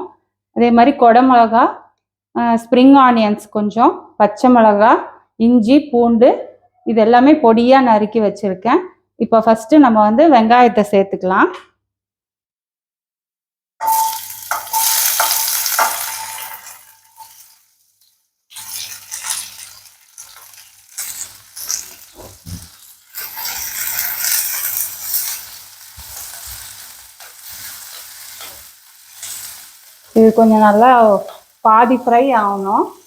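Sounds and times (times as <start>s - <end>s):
onions sizzling in hot oil: 13.8s - 33.0s.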